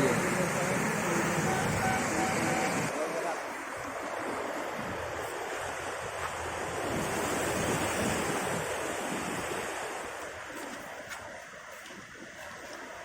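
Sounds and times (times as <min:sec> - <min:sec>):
rushing floodwater roar: 0:00.0 - 0:13.0
wind buffeting microphone: 0:03.8 - 0:13.0.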